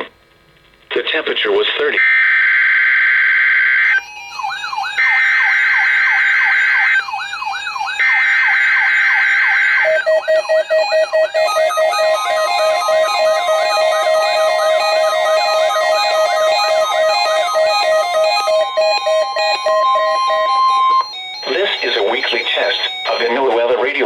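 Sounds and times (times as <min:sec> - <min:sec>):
siren-like sweeping tone: 0:03.8 - 0:21.9
fast pulsing beep: 0:09.9 - 0:24.0.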